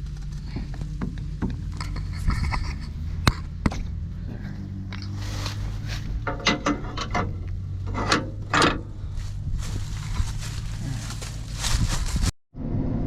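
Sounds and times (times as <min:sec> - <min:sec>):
low engine hum: 0:00.0 - 0:13.0
metal clicks and clanks: 0:04.9 - 0:09.0
sharp metal knocks: 0:06.2 - 0:09.0.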